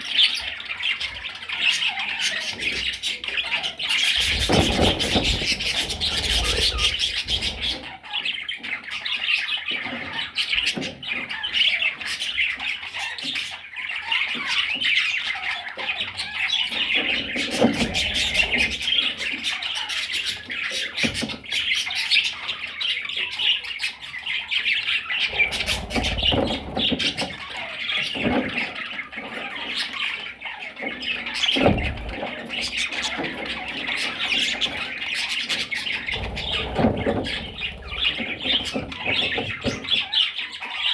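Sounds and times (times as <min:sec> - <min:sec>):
budgerigars chattering and squawking: 0:00.0 - 0:40.9
low rumbles: 0:36.1 - 0:39.3.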